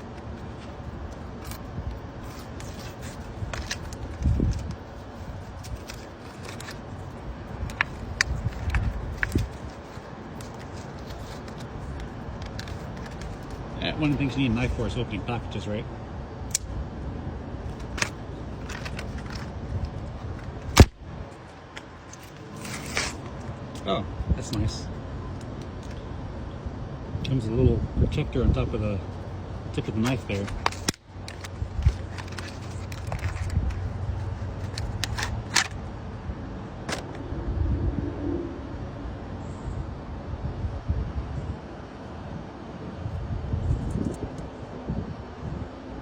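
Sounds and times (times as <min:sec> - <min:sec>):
package clicks and rustling: 0:00.0 - 0:13.7, 0:17.7 - 0:23.5, 0:30.0 - 0:35.8, 0:36.9 - 0:37.2
low steady rumble: 0:00.0 - 0:46.0
wind on microphone: 0:01.6 - 0:13.8, 0:36.2 - 0:46.0.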